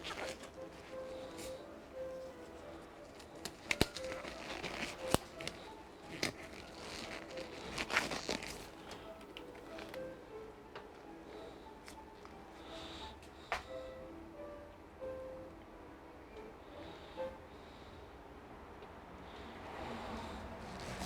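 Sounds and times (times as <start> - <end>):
crinkling and rustling handling: 0.0 - 13.9, 19.8 - 21.0
faint background music: 0.0 - 21.0.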